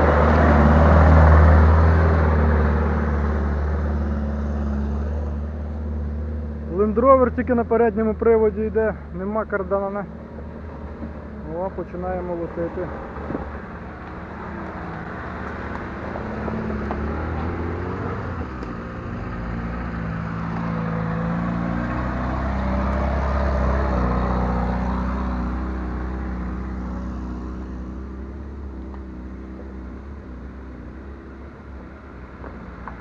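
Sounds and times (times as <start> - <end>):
car engine revving: 0.0 - 33.0.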